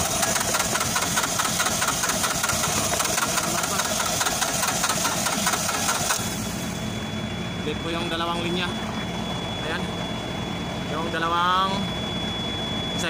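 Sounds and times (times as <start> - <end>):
diesel engine turning over: 0.0 - 7.1.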